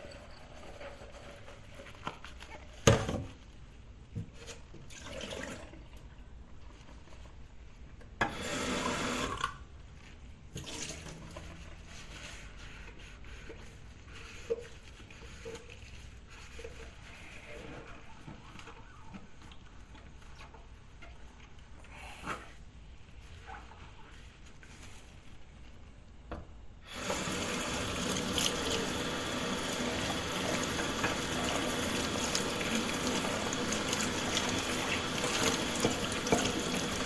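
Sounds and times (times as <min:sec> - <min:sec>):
running water: 0:26.9 - 0:37.0.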